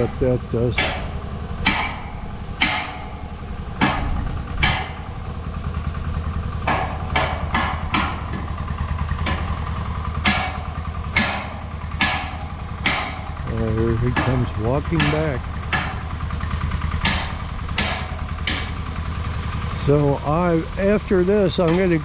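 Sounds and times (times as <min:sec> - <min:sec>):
machine engine running: 0:00.0 - 0:22.0
sharp knocks: 0:00.7 - 0:03.2, 0:03.8 - 0:05.1, 0:06.6 - 0:08.5, 0:09.2 - 0:09.6, 0:10.2 - 0:13.3, 0:14.0 - 0:16.1, 0:17.0 - 0:18.9.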